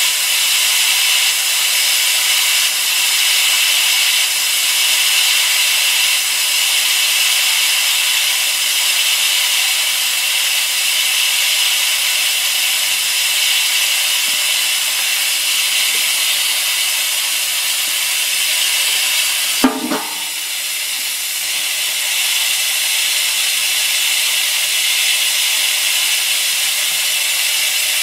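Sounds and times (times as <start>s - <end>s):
compressed air hissing: 12.1s - 21.8s
brief knock: 19.6s - 20.4s.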